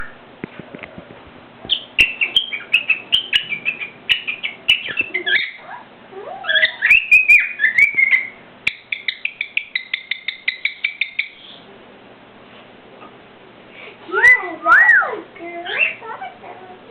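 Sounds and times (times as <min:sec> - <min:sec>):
cockatiel whistling and chirping: 0:01.7 - 0:05.6, 0:06.4 - 0:11.6.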